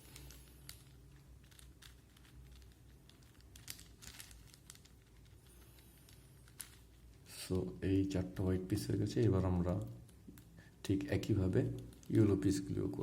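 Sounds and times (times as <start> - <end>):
puzzle cube plastic clicks: 0.0 - 7.2.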